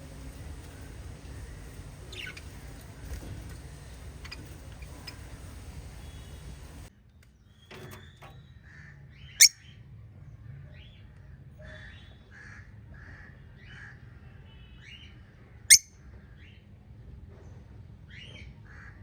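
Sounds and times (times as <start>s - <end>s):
budgerigars chirping and chattering: 0.0s - 6.9s
sharp shrill bird calls: 0.0s - 6.9s.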